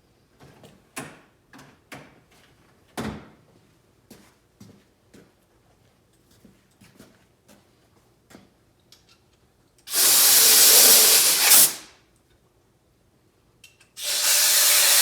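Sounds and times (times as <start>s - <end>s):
compressed air blow gun hiss: 9.9s - 11.9s, 14.0s - 15.0s.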